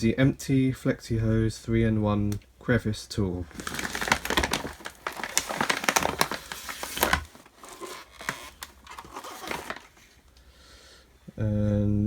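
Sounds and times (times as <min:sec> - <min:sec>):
plastic packaging crinkling: 0:03.4 - 0:10.2.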